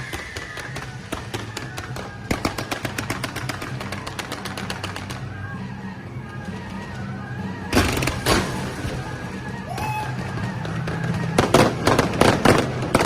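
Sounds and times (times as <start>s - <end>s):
firecrackers popping: 0.0s - 5.6s, 10.0s - 13.0s
background music: 0.0s - 13.0s.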